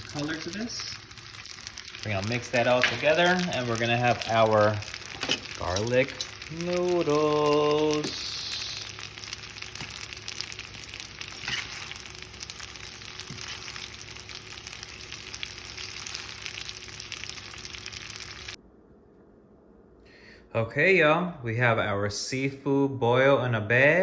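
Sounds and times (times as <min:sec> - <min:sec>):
pasta sizzling in a hot pan: 0:00.0 - 0:18.6.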